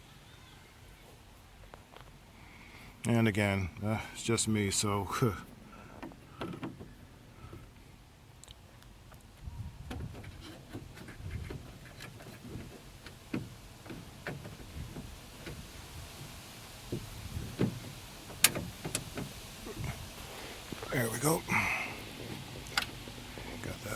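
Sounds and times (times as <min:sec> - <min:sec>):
plastic parts clicking and rubbing: 0:09.9 - 0:19.4.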